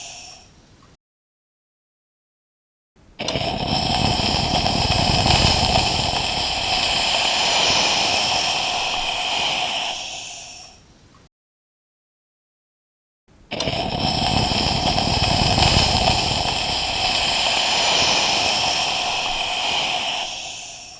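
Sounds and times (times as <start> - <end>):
steam iron hissing: 3.8 - 10.8, 13.8 - 20.9.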